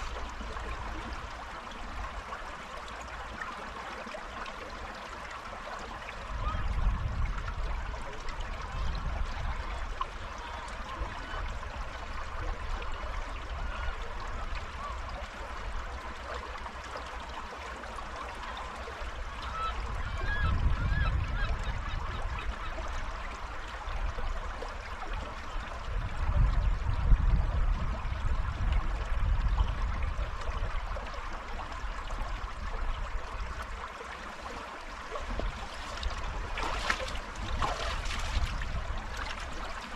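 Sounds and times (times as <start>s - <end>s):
river water rushing over stones: 0.0s - 20.1s, 29.8s - 39.9s
wind buffeting microphone: 6.2s - 15.9s, 19.2s - 22.8s, 25.6s - 31.0s, 35.1s - 39.9s.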